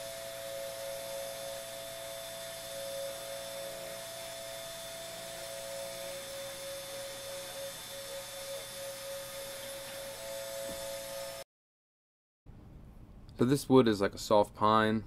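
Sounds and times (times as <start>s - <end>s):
cnc router spindle whining: 0.0s - 11.4s
higher machine tone: 0.0s - 11.4s.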